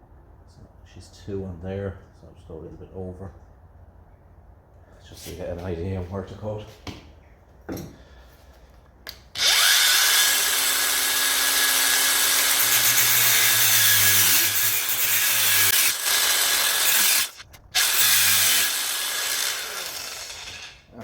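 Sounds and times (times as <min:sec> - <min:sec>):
angle grinder cutting steel: 0:09.4 - 0:21.0.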